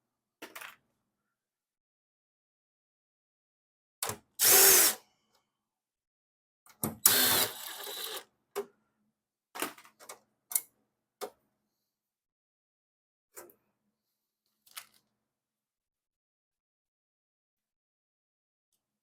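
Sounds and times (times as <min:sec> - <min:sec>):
power driver running: 0:07.1 - 0:08.2.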